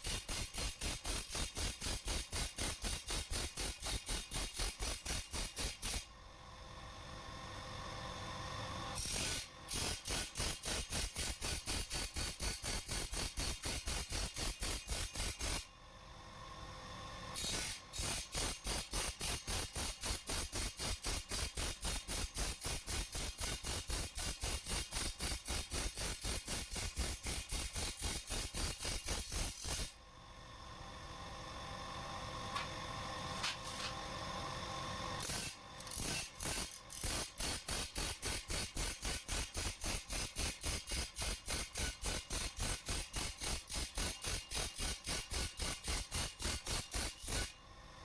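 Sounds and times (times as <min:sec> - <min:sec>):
power machine grinding steel blade: 0:33.3 - 0:34.0, 0:35.2 - 0:41.2, 0:41.8 - 0:47.5.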